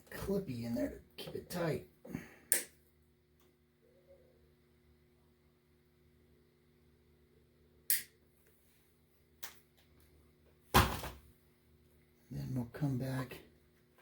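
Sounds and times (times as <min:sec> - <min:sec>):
sharp click: 0:07.9 - 0:08.1.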